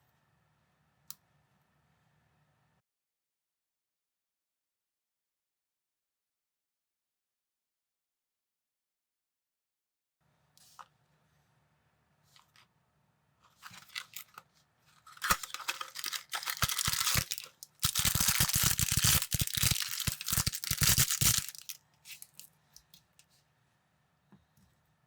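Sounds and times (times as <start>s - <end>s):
plastic bag crinkling and tearing: 13.6s - 14.4s, 15.1s - 22.5s.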